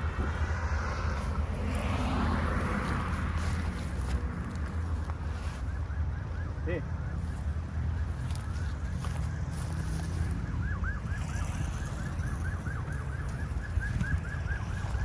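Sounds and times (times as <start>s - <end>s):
wind rumbling on microphone: 7.4s - 15.0s.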